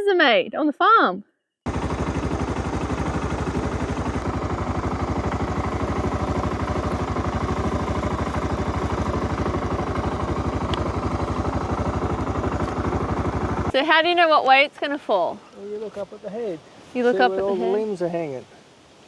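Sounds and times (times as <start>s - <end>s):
engine idling: 1.6s - 13.8s.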